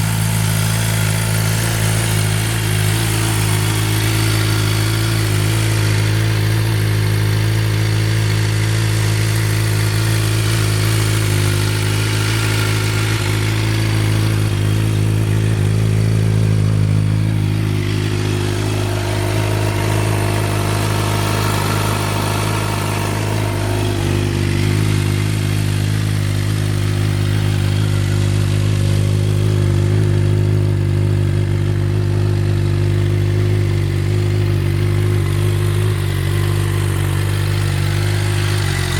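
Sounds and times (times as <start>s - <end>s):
motorcycle engine idling: 0.0s - 38.9s.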